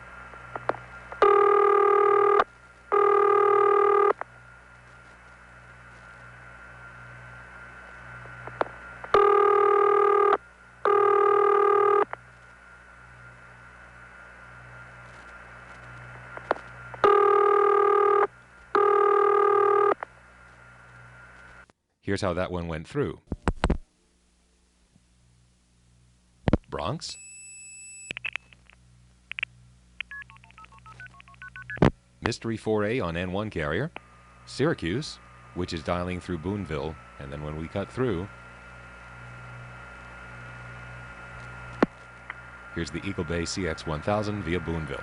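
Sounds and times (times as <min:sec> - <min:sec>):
low line hum and hiss: 0:00.0 - 0:45.0
buzzy telephone ringing tone: 0:01.2 - 0:04.2, 0:09.1 - 0:12.1, 0:17.0 - 0:20.0, 0:30.1 - 0:31.8.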